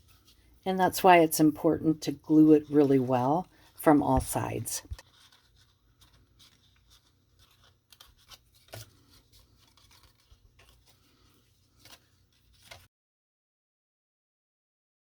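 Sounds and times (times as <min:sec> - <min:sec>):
paper rustling: 0:00.0 - 0:00.6, 0:02.3 - 0:12.9.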